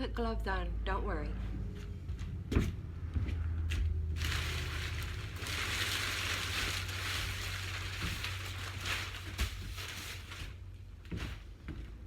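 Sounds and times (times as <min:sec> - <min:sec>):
crinkly rustling of material: 0:04.1 - 0:12.0.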